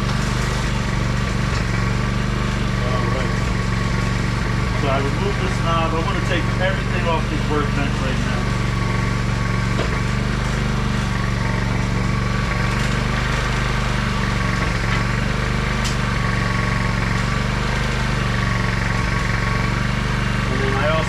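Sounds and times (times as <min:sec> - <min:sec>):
generator engine running: 0:00.0 - 0:21.0.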